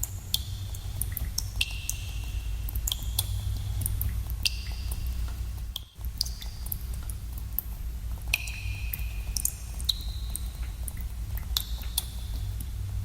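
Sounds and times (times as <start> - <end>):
water drops plinking: 8.3 - 11.0.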